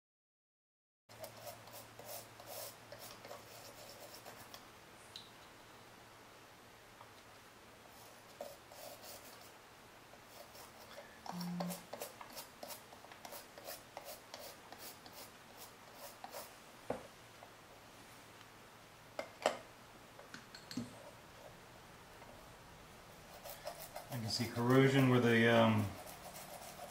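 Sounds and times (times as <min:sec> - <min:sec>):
small brush scrubbing circuit board: 0:01.1 - 0:04.6, 0:07.9 - 0:09.6, 0:10.2 - 0:16.5, 0:23.2 - 0:26.9.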